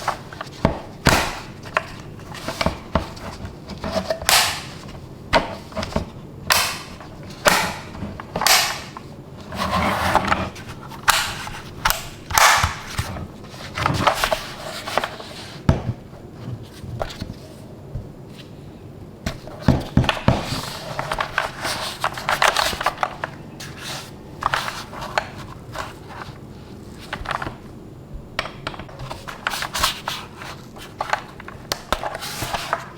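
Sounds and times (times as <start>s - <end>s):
cardboard packaging rustling: 28.8s - 32.9s.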